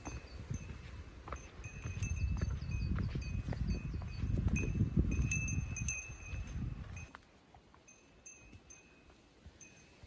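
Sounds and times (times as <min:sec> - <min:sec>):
wind buffeting microphone: 0:00.0 - 0:07.1
small metal bell jingling: 0:01.4 - 0:07.1, 0:07.9 - 0:09.0.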